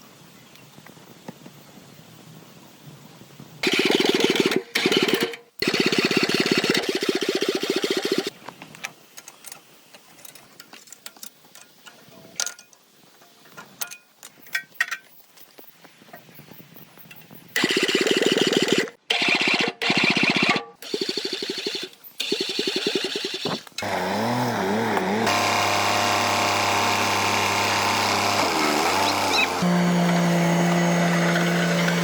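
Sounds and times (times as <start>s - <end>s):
power tool running with pulsing: 17.6s - 32.0s.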